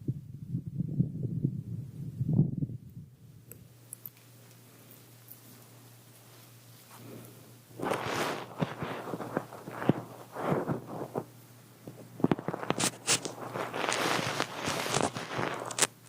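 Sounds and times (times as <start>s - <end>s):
close-up rustling and handling: 3.5s - 16.0s.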